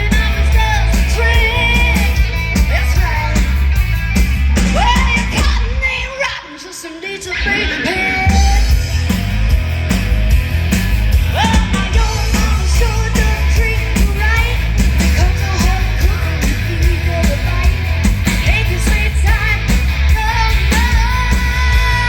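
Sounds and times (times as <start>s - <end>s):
loud rock music with singer: 0.0s - 22.0s.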